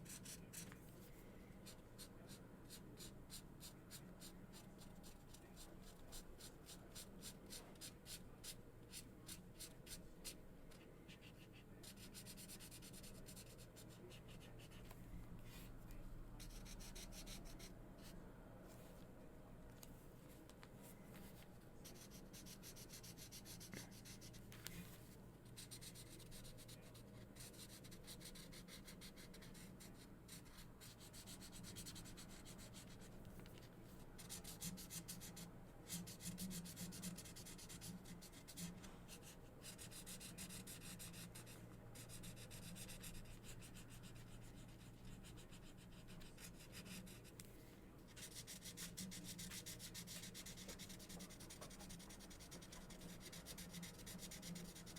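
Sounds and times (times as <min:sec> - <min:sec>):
markers scratching on paper: 0:00.0 - 0:00.8, 0:01.6 - 0:15.7, 0:16.4 - 0:18.1, 0:21.8 - 0:47.4, 0:48.1 - 0:54.9
faint low hum: 0:00.0 - 0:54.9.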